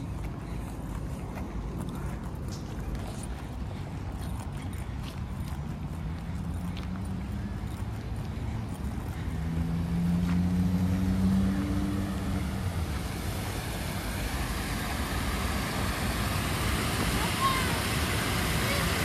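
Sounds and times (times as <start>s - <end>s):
vehicle engine rumble: 0.0s - 19.0s
rushing hiss: 11.3s - 19.0s.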